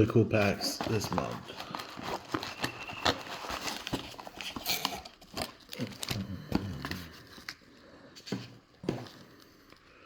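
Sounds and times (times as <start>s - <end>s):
hands rustling packing peanuts: 0.4s - 7.6s.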